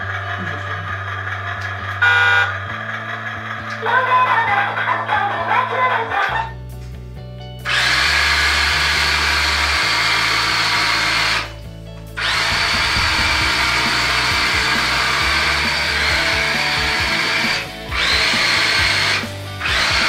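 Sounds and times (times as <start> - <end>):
background music with bass line: 0.0 - 20.0
small electric motor whining: 7.7 - 11.6, 12.2 - 20.0.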